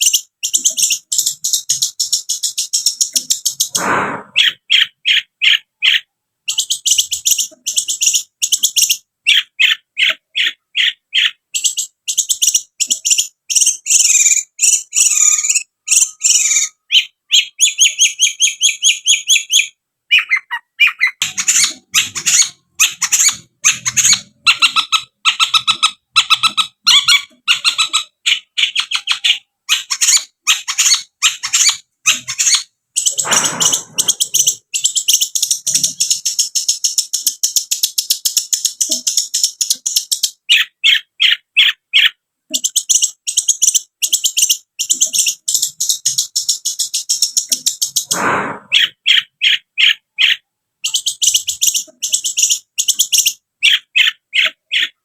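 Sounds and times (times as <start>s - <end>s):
bird chirping fast high notes: 33.0s - 34.6s.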